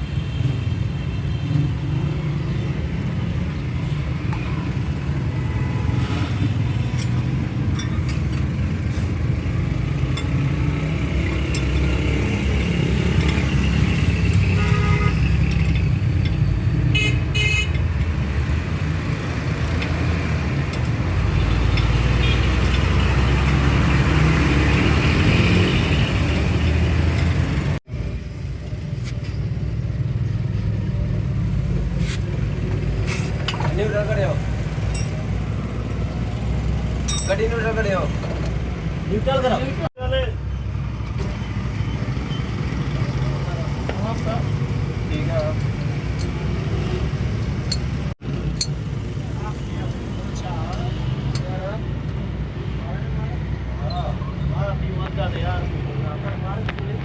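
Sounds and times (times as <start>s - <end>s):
truck horn toots: 14.5s - 15.4s.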